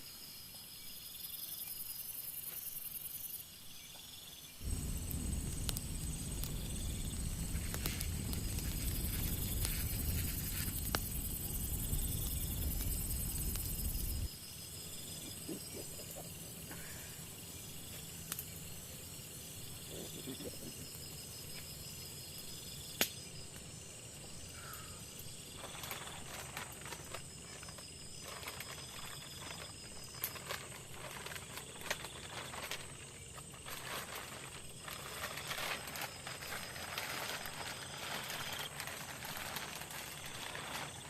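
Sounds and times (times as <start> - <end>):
insects trilling: 0.0 - 41.0
crackling and tapping: 4.6 - 14.3.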